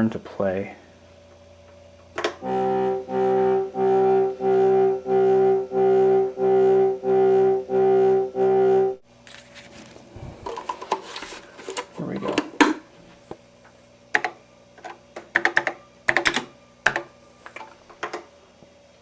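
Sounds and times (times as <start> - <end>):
reedy synthesizer note: 2.4 - 9.0.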